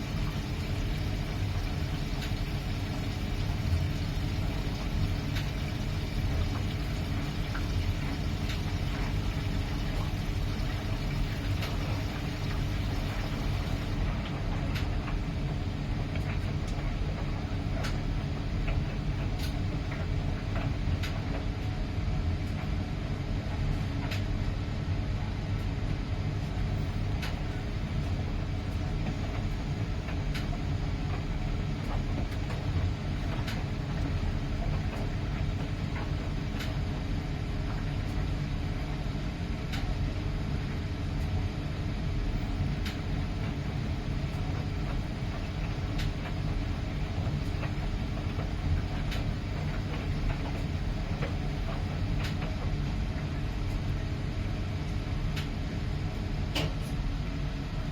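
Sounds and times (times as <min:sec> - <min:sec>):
washing machine rumble: 0:00.0 - 0:57.9.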